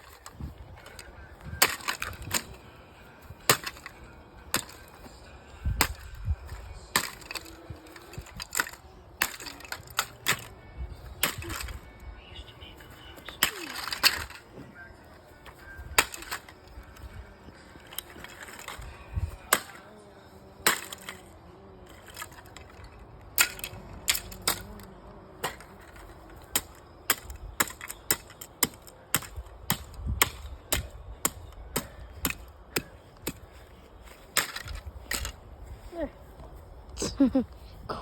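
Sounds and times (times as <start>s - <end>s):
alarm clock being smashed: 3.5s - 3.9s, 7.0s - 10.5s, 11.2s - 11.8s, 13.4s - 14.4s, 15.5s - 17.1s, 20.7s - 21.2s.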